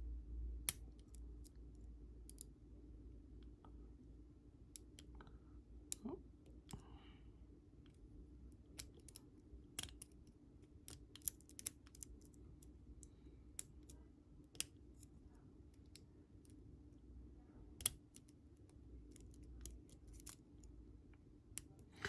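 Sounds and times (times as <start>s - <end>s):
lock pick metallic clicks: 9.8s - 10.2s, 17.8s - 18.3s.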